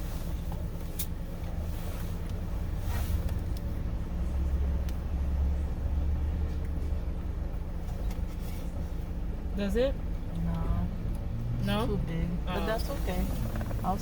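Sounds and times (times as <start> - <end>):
car cabin rumble: 11.8 - 14.0.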